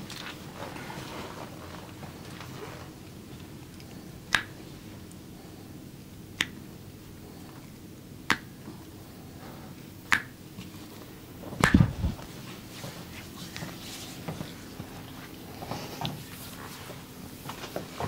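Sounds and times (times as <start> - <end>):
sharp snaps: 3.7 - 5.2, 6.3 - 6.7, 7.6 - 8.7, 10.0 - 10.4, 11.6 - 12.0.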